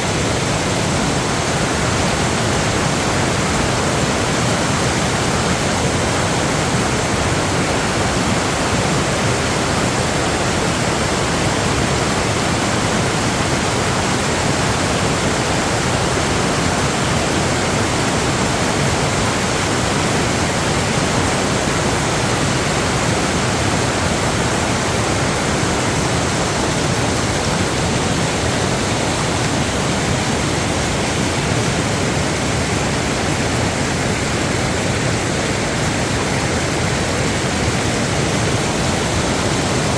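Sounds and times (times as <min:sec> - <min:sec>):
floodwater rushing: 0:00.0 - 0:39.9.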